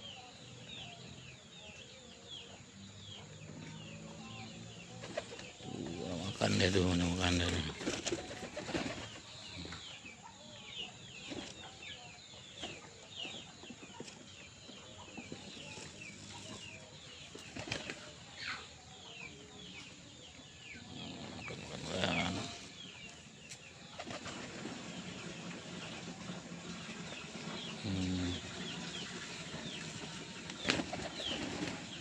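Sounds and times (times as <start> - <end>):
pigeon wings flapping: 7.6 - 9.2, 24.0 - 24.8, 30.4 - 32.0.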